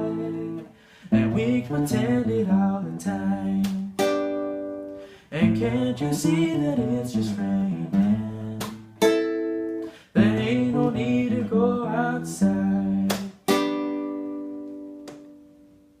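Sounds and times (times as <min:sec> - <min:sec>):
person singing: 0:00.0 - 0:04.2, 0:05.2 - 0:08.9, 0:09.8 - 0:13.6.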